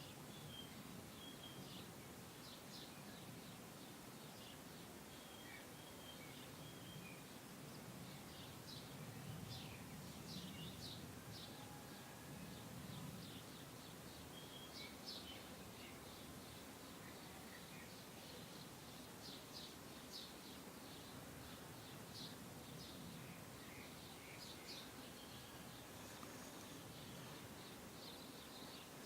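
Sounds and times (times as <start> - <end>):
small birds chirping: 0.0 - 11.6, 12.4 - 29.0.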